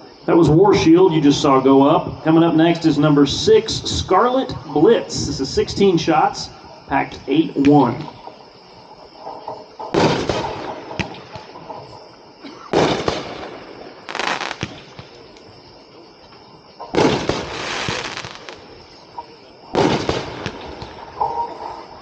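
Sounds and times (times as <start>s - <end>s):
firework cake bangs: 9.9s - 11.5s, 12.8s - 13.5s, 16.9s - 18.4s, 19.8s - 21.0s.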